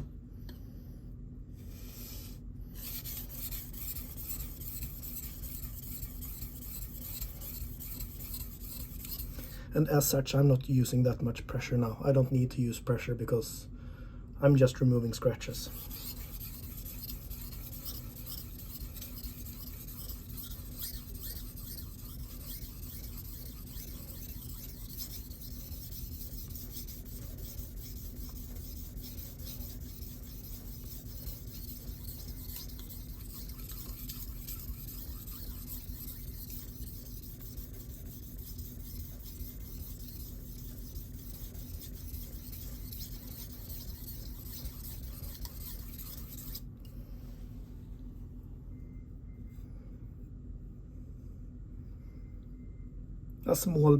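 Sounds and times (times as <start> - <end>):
knife scraping on sharpening stone: 2.8 - 9.4, 15.7 - 46.6.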